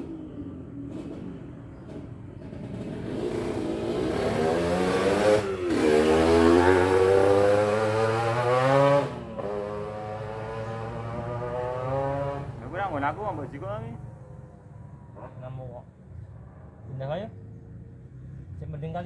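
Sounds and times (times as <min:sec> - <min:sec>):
motorcycle engine accelerating: 0:00.0 - 0:15.2.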